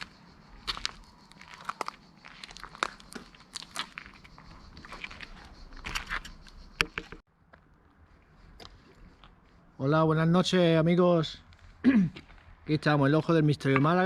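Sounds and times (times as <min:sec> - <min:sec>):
footsteps crunching: 0:00.0 - 0:07.7, 0:11.4 - 0:12.8.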